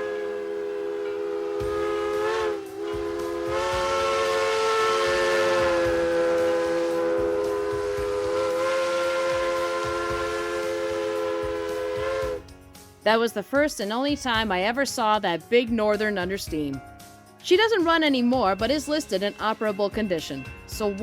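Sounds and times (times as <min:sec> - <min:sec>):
steam hissing: 0:00.0 - 0:12.4
steam whistle chord: 0:00.0 - 0:12.6.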